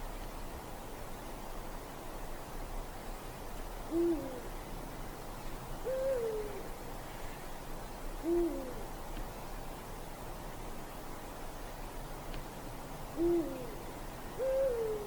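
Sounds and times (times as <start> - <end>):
owl hooting: 3.9 - 4.5, 5.8 - 6.7, 8.2 - 8.8, 13.2 - 13.8, 14.4 - 15.0.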